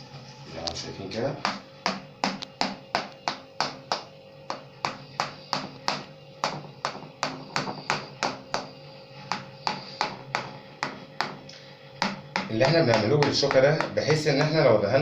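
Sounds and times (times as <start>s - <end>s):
fork tapping on baking tray: 12.0s - 14.6s.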